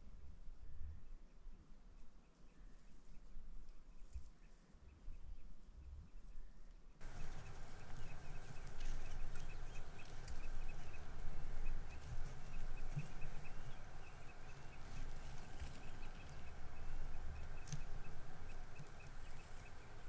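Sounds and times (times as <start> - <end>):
low wind rumble: 7.0 - 20.0
small bird chirping: 7.0 - 20.0.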